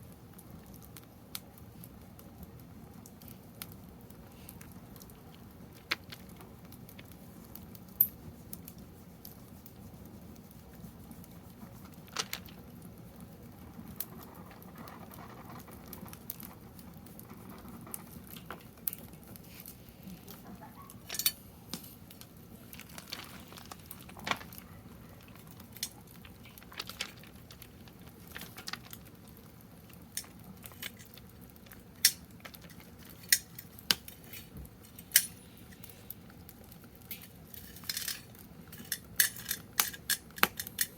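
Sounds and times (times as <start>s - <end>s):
wood fire crackling: 0.0s - 40.9s
sharp pops and snaps: 21.7s - 37.6s.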